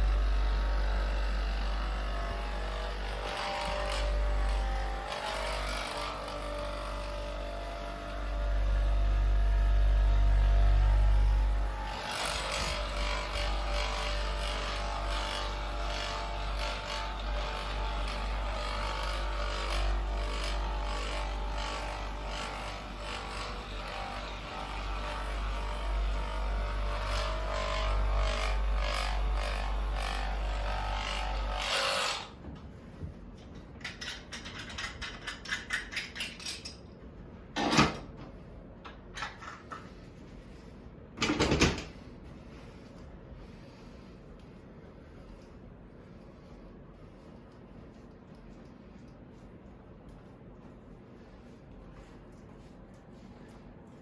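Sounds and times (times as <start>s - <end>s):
electric massager buzzing: 0.0s - 32.4s.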